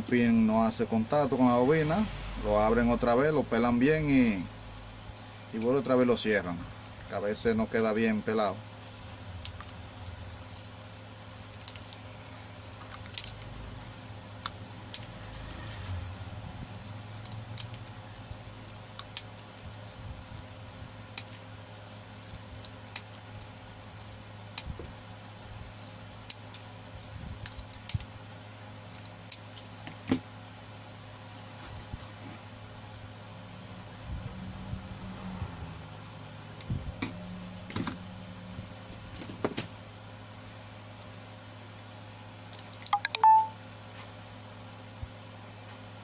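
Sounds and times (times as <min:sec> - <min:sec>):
steady low hum: 0:00.0 - 0:46.0
small parts clicking and tapping: 0:06.8 - 0:08.0, 0:11.6 - 0:15.8, 0:17.1 - 0:21.4, 0:22.2 - 0:24.8, 0:25.8 - 0:26.7, 0:27.4 - 0:28.1, 0:42.5 - 0:43.5.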